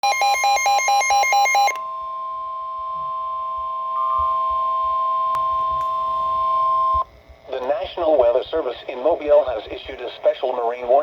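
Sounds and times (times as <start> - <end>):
two-pitch emergency alert tone: 0.0 - 7.0.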